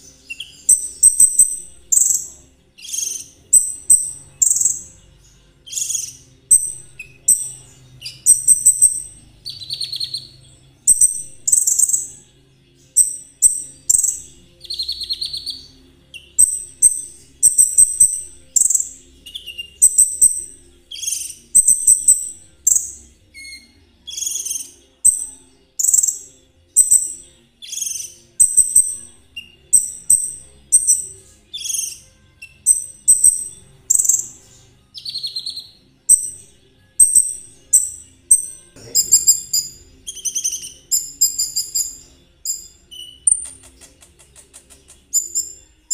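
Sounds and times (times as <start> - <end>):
buzzy rattling bird trills: 0.0 - 5.0, 13.0 - 15.5, 16.2 - 34.6, 36.1 - 43.8
songbird chirping: 0.0 - 45.9.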